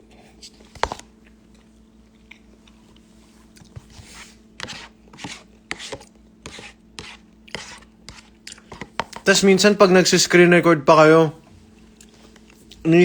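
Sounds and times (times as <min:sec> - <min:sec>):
person chewing noodles: 0:00.1 - 0:03.8, 0:04.8 - 0:09.2.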